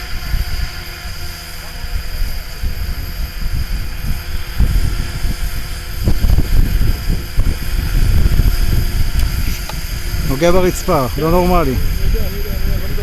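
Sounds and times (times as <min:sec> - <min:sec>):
rc helicopter motor whine: 0:00.0 - 0:13.0
wind buffeting microphone: 0:00.0 - 0:13.0.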